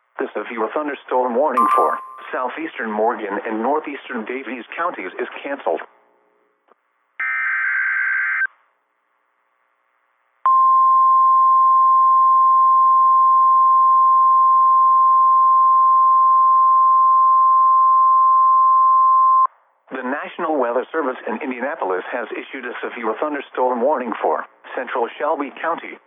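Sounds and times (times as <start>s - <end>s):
single-pitched alarm tone: 1.6s - 2.4s.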